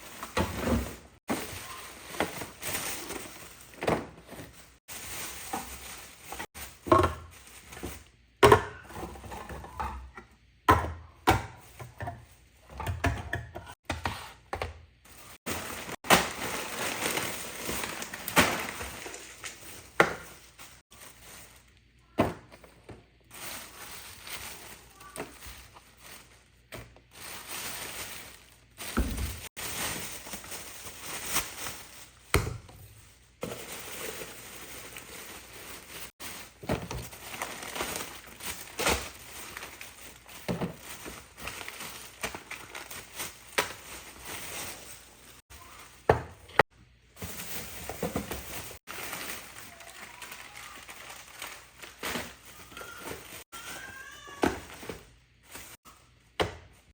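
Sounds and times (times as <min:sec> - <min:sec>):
objects knocking and clattering: 0:05.4 - 0:14.8.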